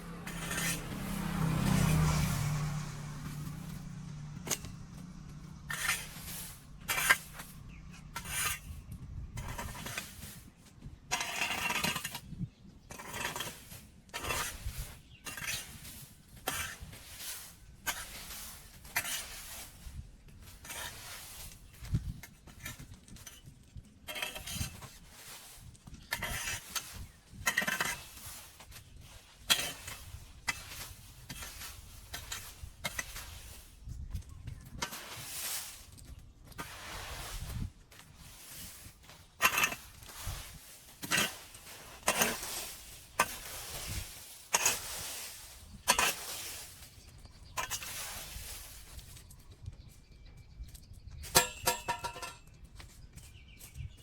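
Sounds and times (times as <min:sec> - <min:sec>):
metal hand tool scraping and clinking: 0:00.2 - 0:01.0, 0:05.7 - 0:08.8, 0:11.1 - 0:12.2, 0:18.9 - 0:19.6, 0:24.1 - 0:24.9, 0:26.1 - 0:28.5, 0:29.5 - 0:33.3, 0:38.0 - 0:46.8, 0:47.5 - 0:48.4, 0:51.2 - 0:52.6.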